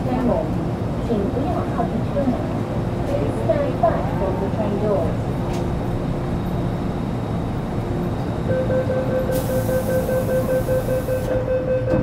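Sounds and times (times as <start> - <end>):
train electrical whine: 2.7 - 12.0
hiss: 9.4 - 11.2.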